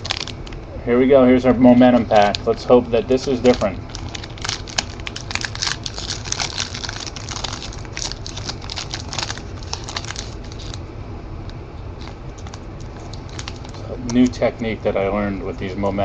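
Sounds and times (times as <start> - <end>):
foil wrapper crinkling: 0.0 - 0.6, 1.8 - 10.8, 12.0 - 14.5.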